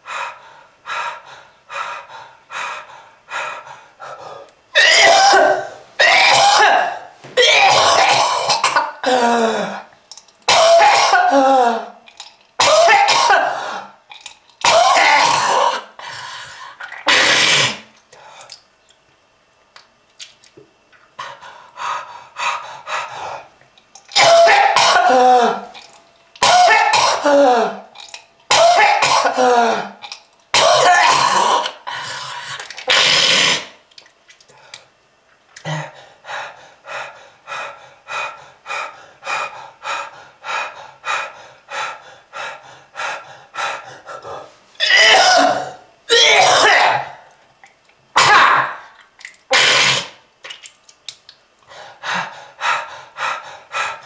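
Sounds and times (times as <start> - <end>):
person coughing and hacking: 4.8 - 9.3, 10.5 - 11.6, 12.6 - 13.6, 14.6 - 15.8, 17.0 - 17.8, 24.1 - 25.8, 26.4 - 27.9, 28.5 - 31.8, 44.8 - 47.2, 48.2 - 48.8, 49.5 - 50.1.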